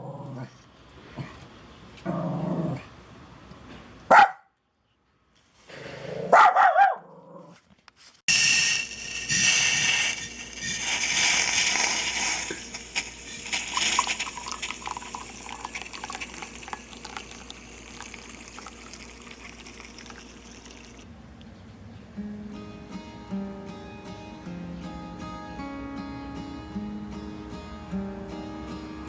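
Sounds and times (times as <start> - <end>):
water pouring in a stream: 8.4 - 21.1
water dripping: 10.8 - 21.0.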